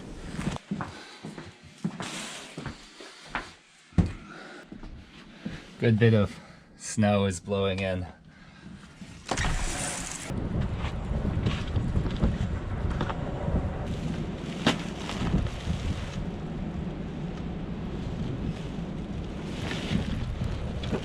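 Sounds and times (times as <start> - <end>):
wind buffeting microphone: 10.3 - 21.0.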